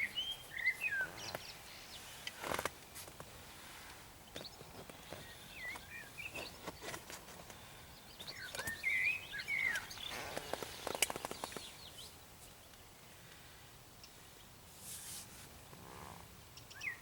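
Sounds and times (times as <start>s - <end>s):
songbird warbling: 0.0s - 2.1s, 7.6s - 12.2s, 16.6s - 17.0s
sharp clicks: 9.7s - 11.7s.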